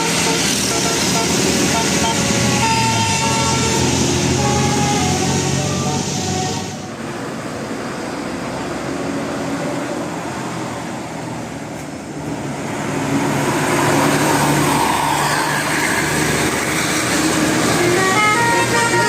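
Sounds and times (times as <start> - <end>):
diesel engine running: 0.0 - 8.6, 15.6 - 19.0
road traffic: 0.0 - 19.0.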